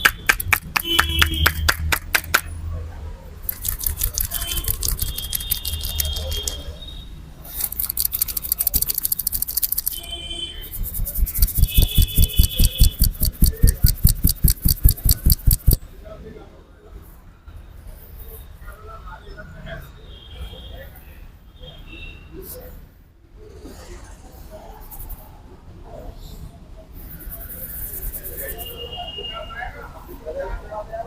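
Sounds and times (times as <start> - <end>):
hand slaps and taps on head: 0.0 - 2.5, 10.7 - 15.8.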